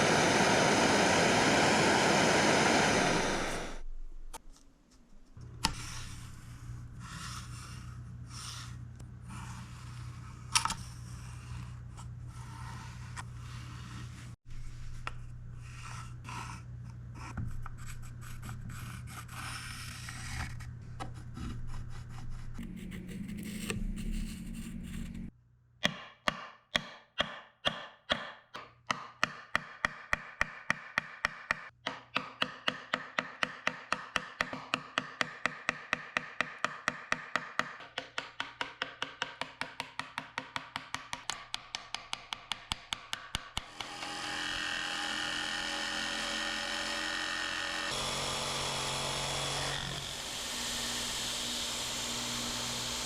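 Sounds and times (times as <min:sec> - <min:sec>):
rubbing and scraping: 0:05.1 - 0:25.3.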